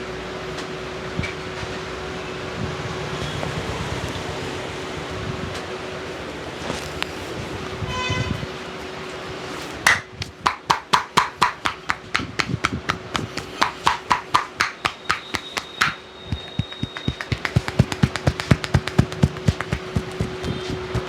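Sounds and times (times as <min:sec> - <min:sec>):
hands slapping a head: 0:09.9 - 0:21.0.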